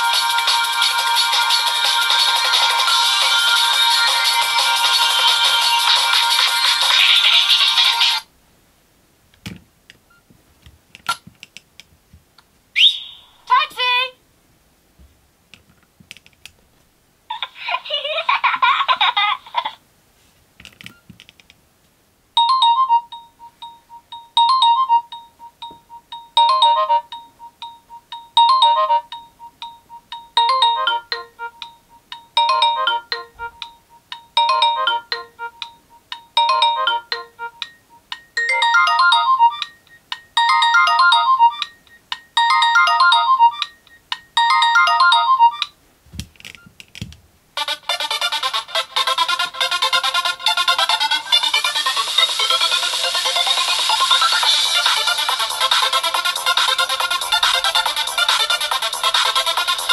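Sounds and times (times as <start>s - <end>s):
electronic ringtone melody: 0.0s - 8.2s, 22.4s - 45.8s, 47.6s - 59.9s.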